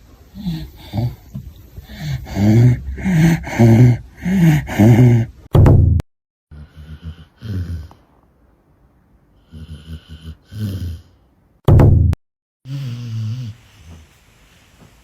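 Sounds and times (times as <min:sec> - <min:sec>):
dog snoring: 0:06.5 - 0:08.1, 0:09.4 - 0:11.2, 0:12.7 - 0:14.2.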